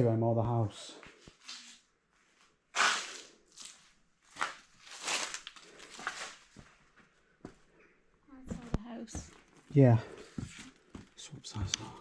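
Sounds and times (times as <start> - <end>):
crunching footsteps: 2.8 - 7.6.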